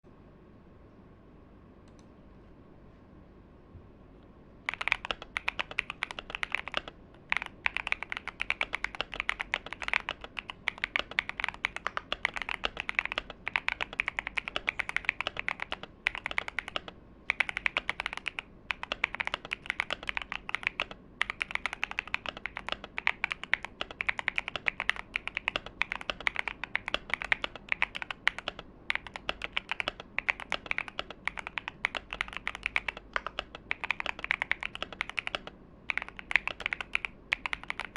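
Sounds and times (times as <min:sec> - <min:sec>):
typing on mechanical keyboard: 0:04.7 - 0:37.9.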